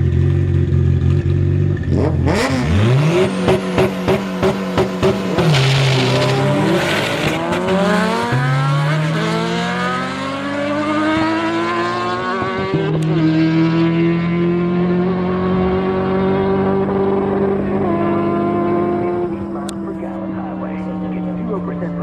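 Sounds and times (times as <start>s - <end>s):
car engine accelerating hard: 0.0s - 22.0s
rushing noise: 3.3s - 8.1s.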